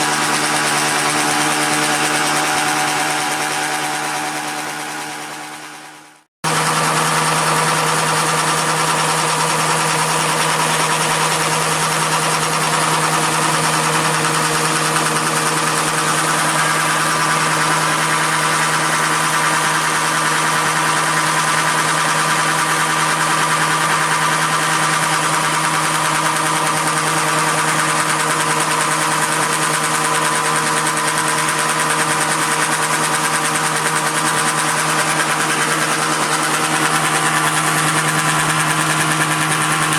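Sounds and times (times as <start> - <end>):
milling machine humming: 6.5 - 39.9.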